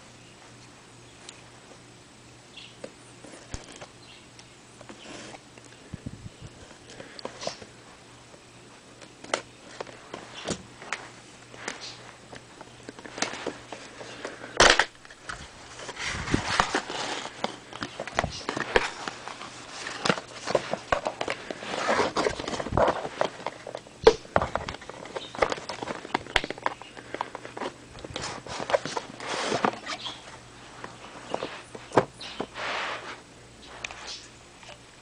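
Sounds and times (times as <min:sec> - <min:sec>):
packaging rustling: 0:09.1 - 0:33.1.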